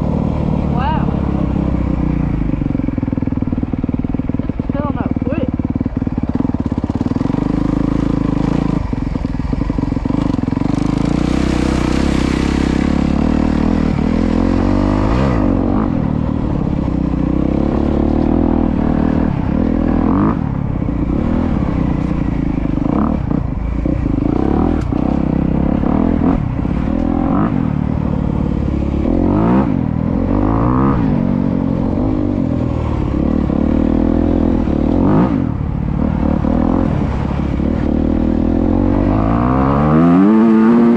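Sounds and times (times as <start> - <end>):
dirt bike engine revving: 0.0 - 40.9.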